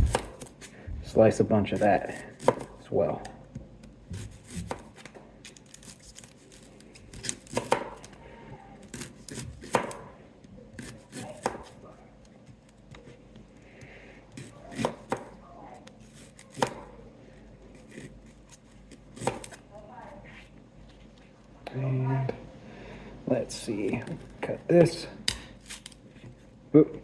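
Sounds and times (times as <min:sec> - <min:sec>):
knife slicing ginger: 0:00.0 - 0:00.7, 0:01.7 - 0:02.8, 0:04.1 - 0:05.1, 0:07.1 - 0:08.1, 0:08.9 - 0:10.2, 0:10.8 - 0:11.8, 0:14.3 - 0:15.3, 0:15.9 - 0:16.9, 0:17.8 - 0:19.6.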